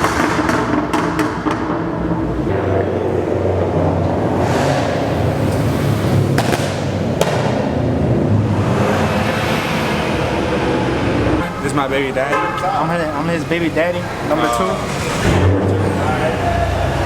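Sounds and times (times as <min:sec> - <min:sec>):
vehicle engines running: 0:00.0 - 0:17.0
sharp pops: 0:06.3 - 0:07.8.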